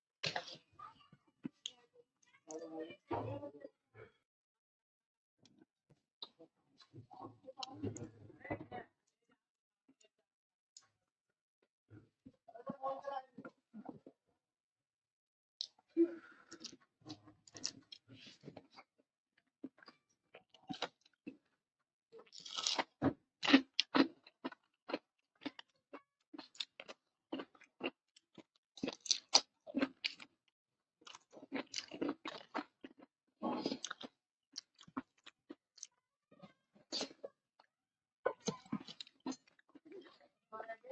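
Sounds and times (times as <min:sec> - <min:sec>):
person chewing crunchy food: 0:19.6 - 0:21.4, 0:22.2 - 0:30.3, 0:31.0 - 0:36.0, 0:36.8 - 0:37.3, 0:38.3 - 0:40.2.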